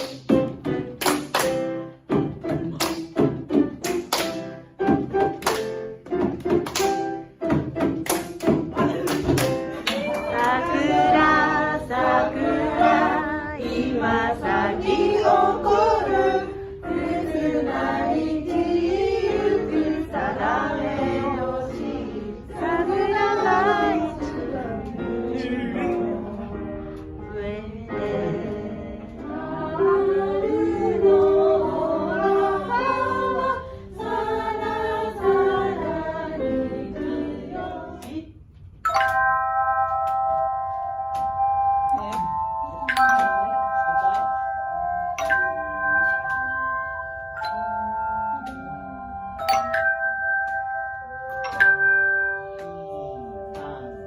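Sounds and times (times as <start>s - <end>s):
group of people singing: 8.8s - 38.4s.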